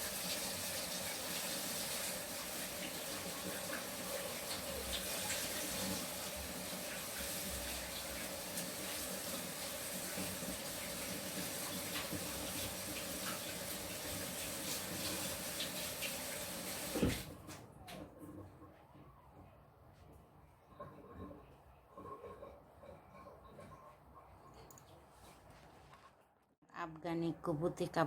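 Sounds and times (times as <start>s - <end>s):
water running from a tap: 0.0s - 17.6s.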